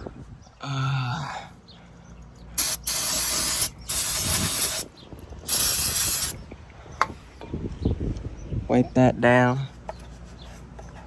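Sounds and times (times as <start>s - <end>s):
aerosol spray can hissing: 2.6s - 4.9s, 5.5s - 6.4s.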